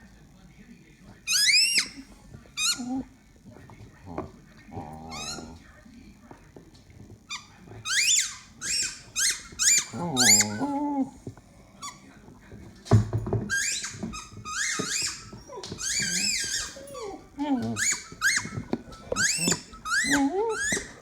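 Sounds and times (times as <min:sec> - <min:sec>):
squeaky toy squeaking: 0:01.3 - 0:02.0, 0:02.6 - 0:03.0, 0:05.1 - 0:05.6, 0:07.3 - 0:10.8, 0:13.5 - 0:21.0
low squeal: 0:13.5 - 0:21.0.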